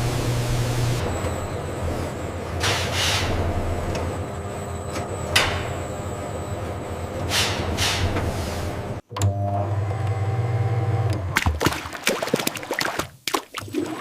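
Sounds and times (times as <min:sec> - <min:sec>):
machine hum with steady tones: 0:00.0 - 0:09.0
factory machinery humming: 0:00.0 - 0:11.3.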